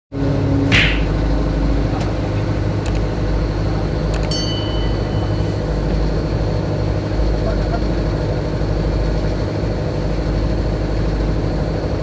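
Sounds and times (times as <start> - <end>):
low engine-like rumble: 0.1 - 12.0
high ringing tone: 4.2 - 6.2.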